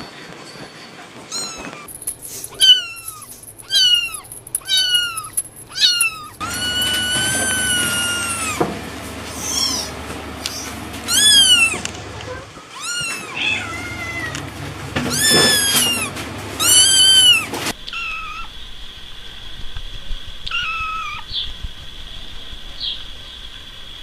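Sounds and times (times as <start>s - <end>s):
kittens meowing: 1.3s - 1.9s, 2.5s - 8.6s, 9.4s - 18.5s, 20.4s - 21.3s
kitten chirps: 16.6s - 18.5s, 20.4s - 21.3s
faint steady high whine: 17.8s - 24.0s.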